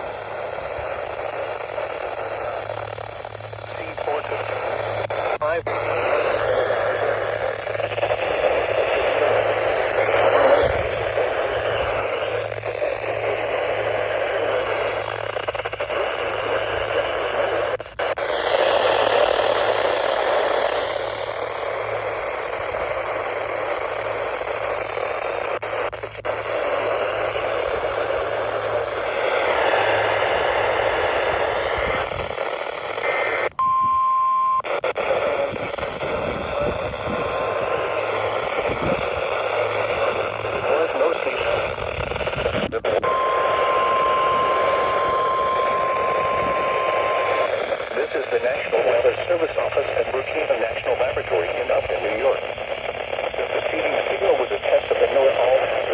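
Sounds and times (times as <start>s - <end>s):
low hum: 0.0s - 53.7s
radio static hiss: 0.0s - 55.9s
steady high beep: 33.6s - 34.6s, 43.0s - 47.5s.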